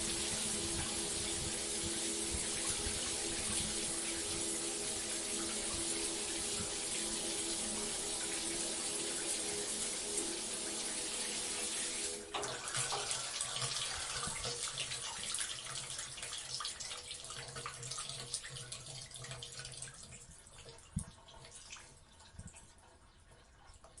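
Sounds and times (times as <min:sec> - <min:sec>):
shower spray running: 0:00.0 - 0:15.4
water trickling and dripping: 0:00.0 - 0:24.0.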